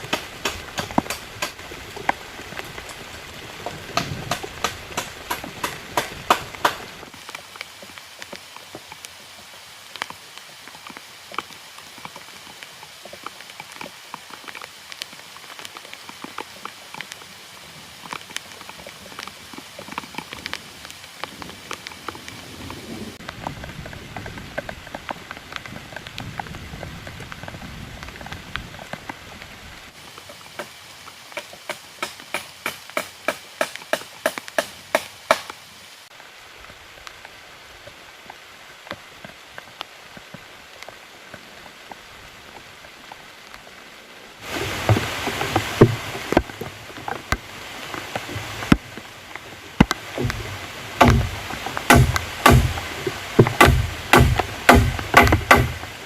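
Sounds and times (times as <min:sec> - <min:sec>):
steady rain falling: 0:00.0 - 0:56.0
sharp knocks: 0:49.8 - 0:55.9.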